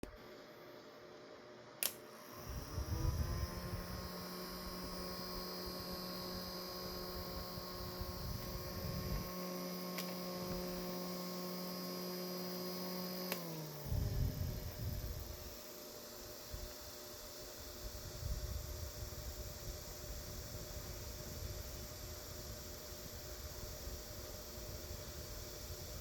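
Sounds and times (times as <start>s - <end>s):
electric fan motor hum and whine: 0.0s - 26.0s
fan switch click: 1.8s - 2.0s, 13.2s - 13.5s.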